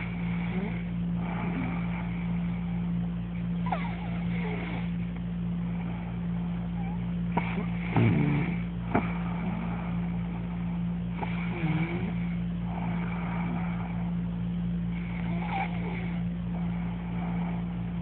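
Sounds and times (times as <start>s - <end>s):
faint hazy sounds: 0.0s - 18.0s
low mechanical hum: 0.0s - 18.0s.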